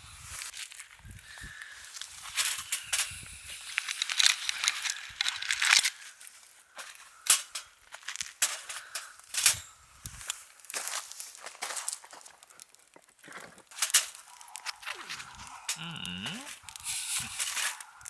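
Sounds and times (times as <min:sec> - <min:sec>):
crinkling and rustling: 0:00.4 - 0:18.0
sharp clicks from handling: 0:02.4 - 0:06.0.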